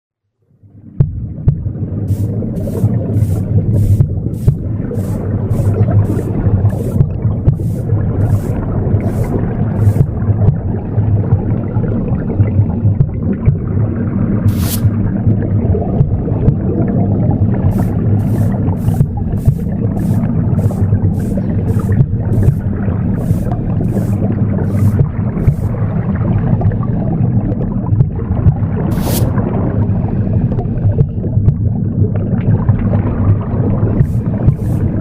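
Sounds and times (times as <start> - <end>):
low whooshing womb rumble: 0.7 - 35.0
broom sweeping: 2.1 - 10.1, 14.5 - 15.0, 17.7 - 25.8, 28.9 - 29.4, 34.0 - 35.0.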